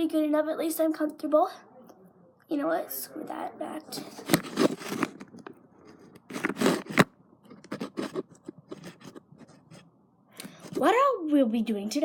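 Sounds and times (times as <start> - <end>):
handling scrapes rubs and clicks: 4.0 - 9.9.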